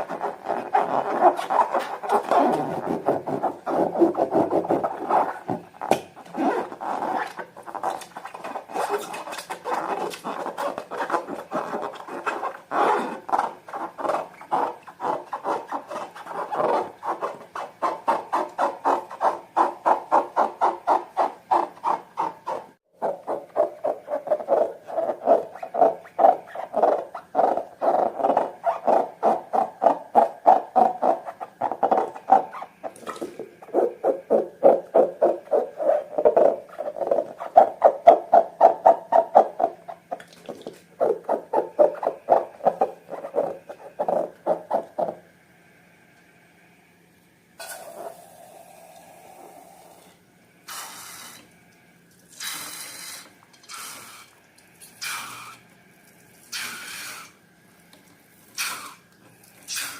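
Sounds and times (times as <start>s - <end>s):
slime squelching: 0.0s - 45.2s.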